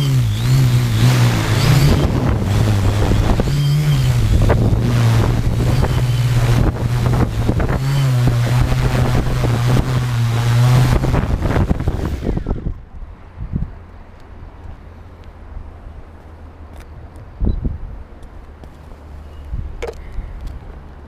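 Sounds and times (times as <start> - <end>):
drone motors humming: 0.0 - 13.2
wind buffeting microphone: 0.1 - 14.0, 16.9 - 18.1.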